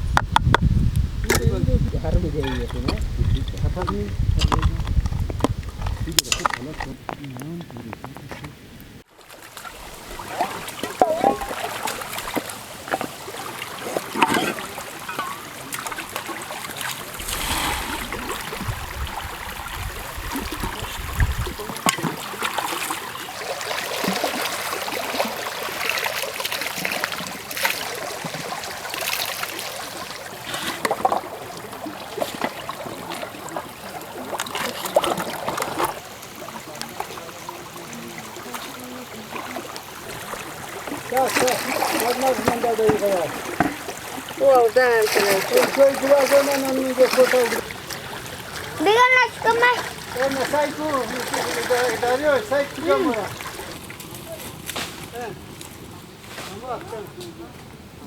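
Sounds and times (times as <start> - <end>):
water trickling and splashing: 0.1 - 58.0
clinks and knocks of handling: 14.2 - 15.6.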